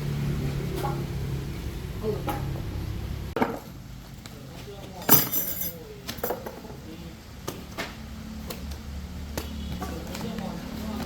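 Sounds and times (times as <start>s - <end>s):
metal parts clinking: 5.0s - 6.4s.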